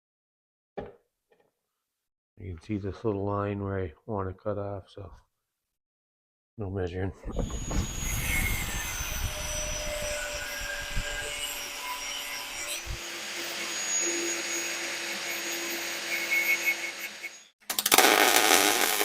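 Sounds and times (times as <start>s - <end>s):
power tool cutting metal: 7.3s - 19.0s.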